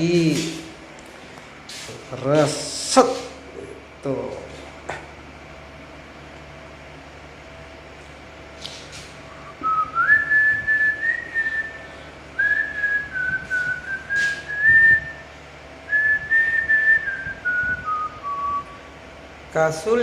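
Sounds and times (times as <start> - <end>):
person whistling a tune: 9.5 - 15.2, 15.9 - 18.8.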